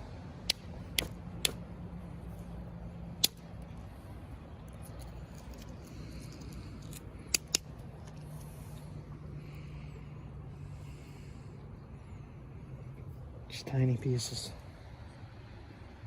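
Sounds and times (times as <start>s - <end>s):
steady low hum: 0.0s - 16.0s
stones clicking together: 4.7s - 8.2s.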